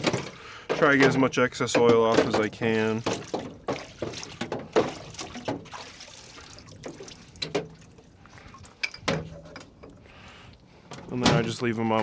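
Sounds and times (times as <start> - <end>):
sharp knocks in tank: 0.0 - 7.9
liquid splashing and dripping: 0.0 - 11.0.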